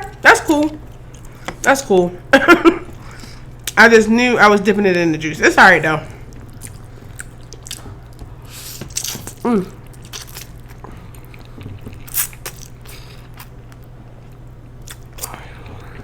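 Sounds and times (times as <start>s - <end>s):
steady low hum: 0.0s - 16.0s
chewing and biting food: 6.2s - 16.0s.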